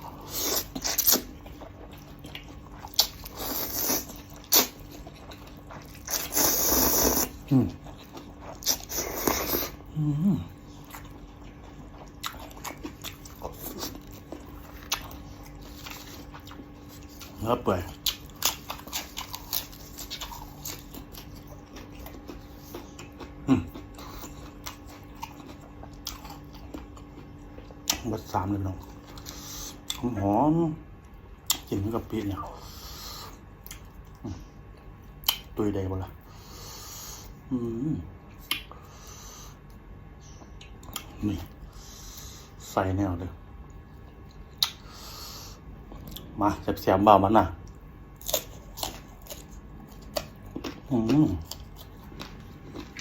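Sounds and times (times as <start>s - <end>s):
wet chewing: 0.0s - 30.2s, 47.6s - 53.0s.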